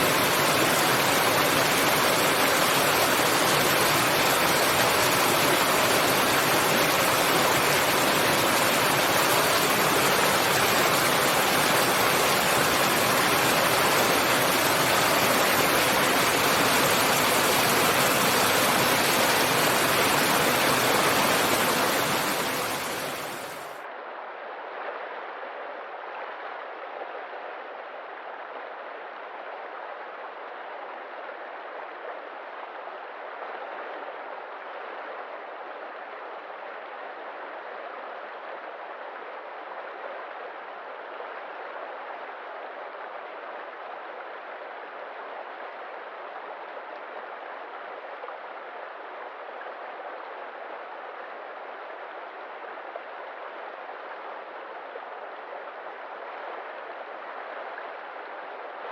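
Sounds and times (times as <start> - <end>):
stream water running: 0.0 - 23.8.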